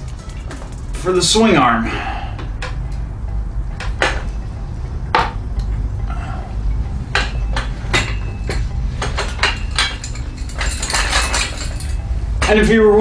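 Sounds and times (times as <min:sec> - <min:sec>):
steady low hum: 0:00.0 - 0:13.0
metal tools clinking and clanking: 0:06.8 - 0:13.0.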